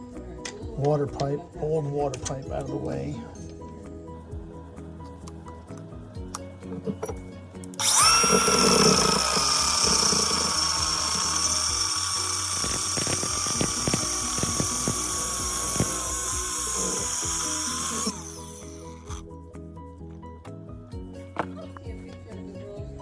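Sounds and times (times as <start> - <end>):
power tool whining: 6.6 - 19.2
scattered clicks: 7.8 - 18.2.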